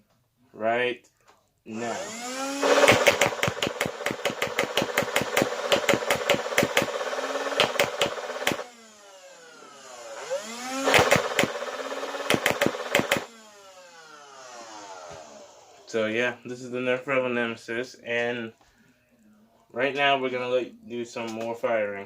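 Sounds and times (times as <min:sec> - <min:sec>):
flywheel motors whining: 0:01.8 - 0:15.9
foam blaster firing rapidly: 0:02.6 - 0:08.6, 0:10.8 - 0:13.3.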